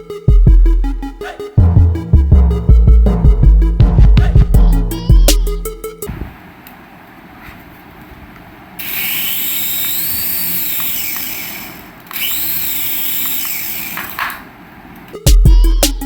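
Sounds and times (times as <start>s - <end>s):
small electric motor whirring: 8.8s - 14.2s.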